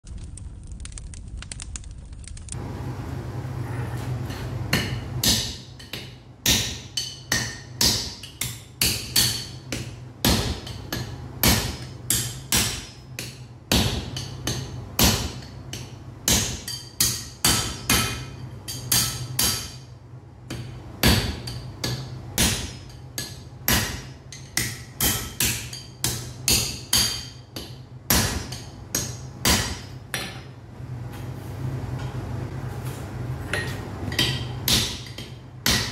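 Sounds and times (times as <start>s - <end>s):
steady low hum: 0.1s - 35.9s
hammer striking iron on anvil: 4.3s - 19.9s, 20.5s - 30.5s, 33.5s - 35.9s.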